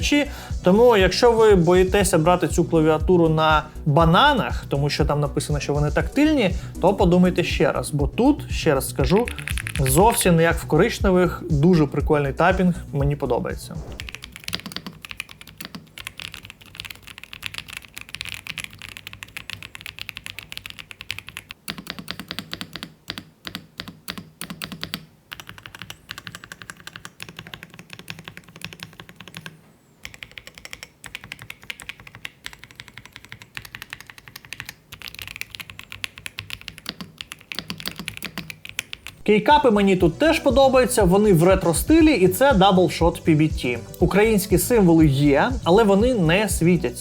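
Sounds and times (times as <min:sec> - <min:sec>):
mechanical keyboard typing: 0:09.0 - 0:10.2, 0:14.0 - 0:39.2.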